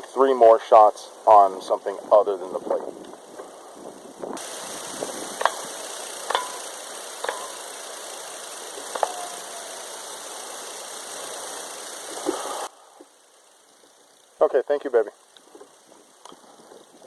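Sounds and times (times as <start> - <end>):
steady hiss: 0.0 - 17.0
faint suppressed rifle shots: 4.4 - 9.7
bullet impacts: 5.4 - 7.6.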